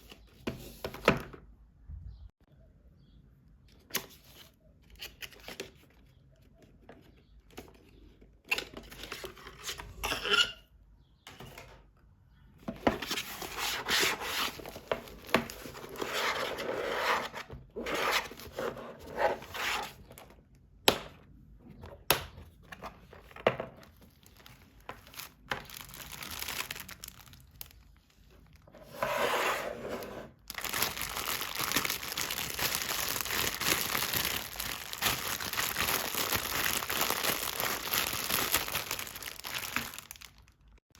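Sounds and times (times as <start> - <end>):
packaging tearing and crinkling: 24.3 - 27.8, 30.5 - 40.6.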